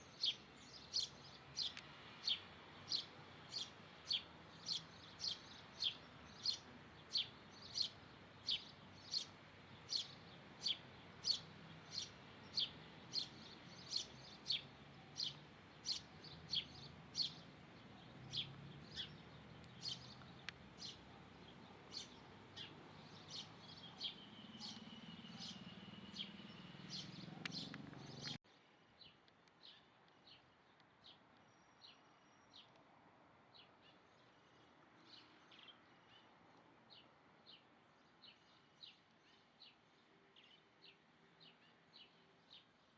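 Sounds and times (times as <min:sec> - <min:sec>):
small bird chirping: 0:00.0 - 0:28.4.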